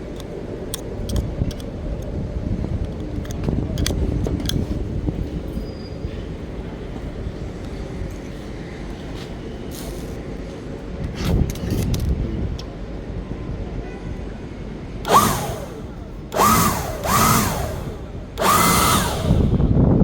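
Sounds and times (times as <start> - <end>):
small electric motor tool whirring: 15.0 - 19.7.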